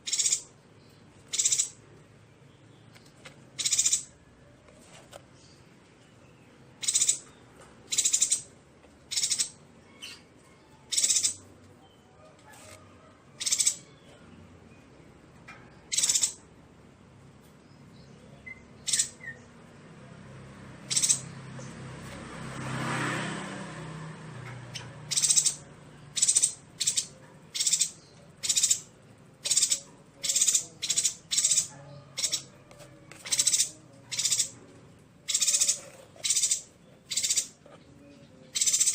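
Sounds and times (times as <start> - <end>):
high-pitched bird calls: 0.0 - 1.9, 2.9 - 4.3, 6.8 - 14.2, 15.7 - 16.5, 18.0 - 19.6, 20.8 - 21.8, 24.4 - 38.9.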